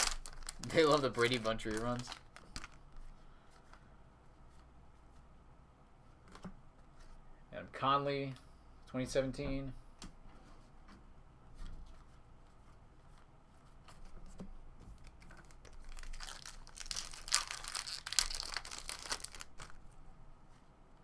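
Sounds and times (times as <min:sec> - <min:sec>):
wrapper tearing and crinkling: 0:00.0 - 0:02.8, 0:15.0 - 0:19.8.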